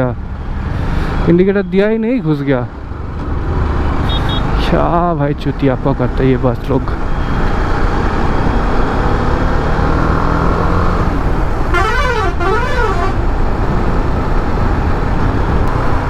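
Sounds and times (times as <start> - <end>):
wind and road rush: 0.0 - 16.0
warbling musical vehicle horn: 11.7 - 13.2.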